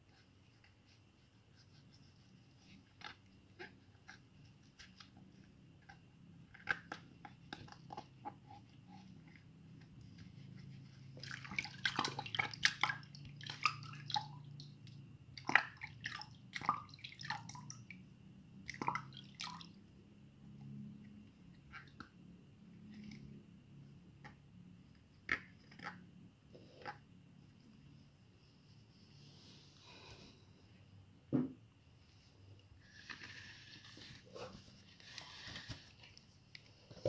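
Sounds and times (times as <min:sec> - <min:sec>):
faint low hum: 0:00.0 - 0:37.0
water dripping and splashing: 0:11.2 - 0:18.0, 0:18.6 - 0:19.8.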